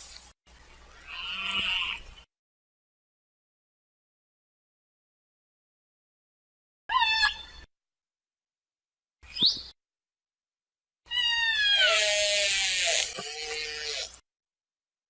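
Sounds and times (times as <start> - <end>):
killer whale calls: 11.2 - 14.1.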